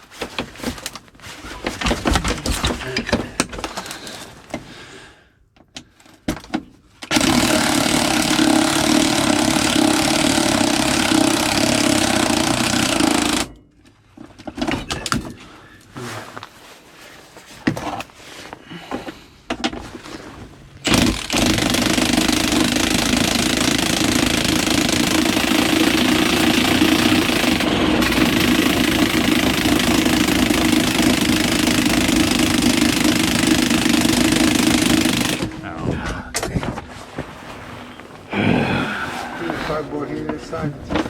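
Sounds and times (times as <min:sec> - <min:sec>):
scattered clicks and clanks: 0:00.1 - 0:04.7, 0:05.6 - 0:15.4, 0:20.8 - 0:36.9
loud power tool running: 0:07.1 - 0:13.5, 0:20.8 - 0:35.6.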